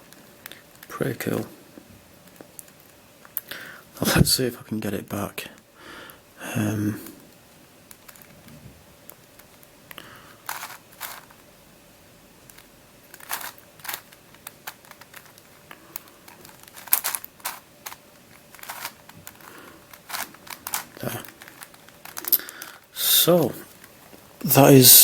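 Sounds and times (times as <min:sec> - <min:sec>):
plastic puzzle clicking: 0:07.9 - 0:11.5, 0:12.4 - 0:24.0.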